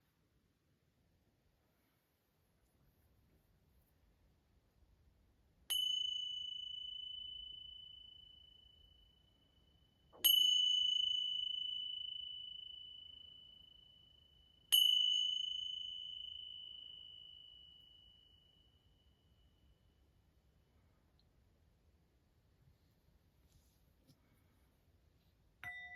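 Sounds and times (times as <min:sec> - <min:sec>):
high metal chime ringing: 0:05.7 - 0:20.0, 0:25.6 - 0:25.9.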